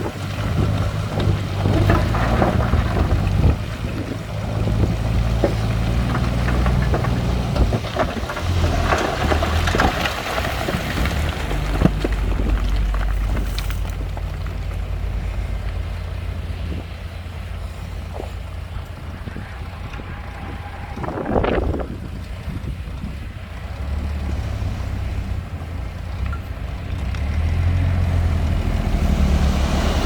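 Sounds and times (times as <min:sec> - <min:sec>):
diesel machinery running: 0:00.0 - 0:30.0
stones clattering: 0:00.3 - 0:15.0.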